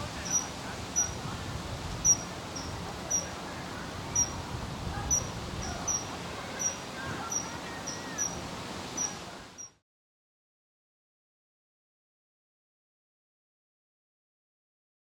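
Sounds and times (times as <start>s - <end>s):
low outdoor background hum: 0.0s - 9.8s
kingfisher shrill calls: 0.2s - 1.2s, 2.0s - 3.3s, 4.1s - 4.4s, 5.0s - 9.7s.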